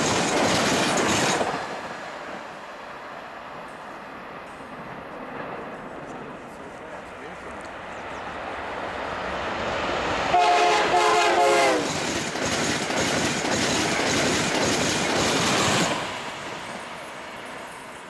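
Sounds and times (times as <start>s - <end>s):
train passing at speed: 0.0s - 18.0s
train horn: 10.3s - 12.0s.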